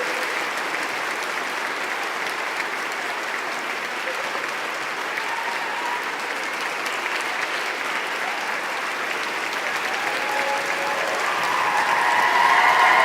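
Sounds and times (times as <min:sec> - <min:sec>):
audience applauding: 0:00.0 - 0:13.0.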